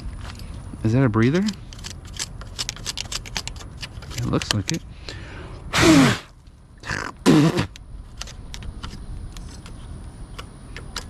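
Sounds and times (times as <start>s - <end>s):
light clicks and taps of parts: 1.3s - 5.2s
man breathing: 4.8s - 6.3s.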